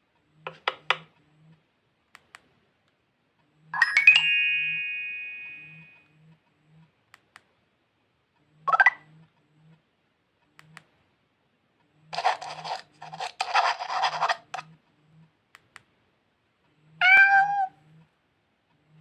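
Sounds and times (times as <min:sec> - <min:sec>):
scratchy noise from phone speaker: 0:12.1 - 0:14.6.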